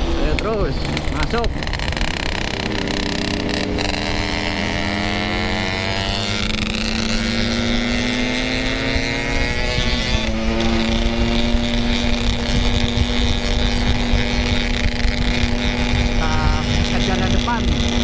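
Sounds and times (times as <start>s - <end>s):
two-stroke motorcycle engine: 0.0s - 18.0s.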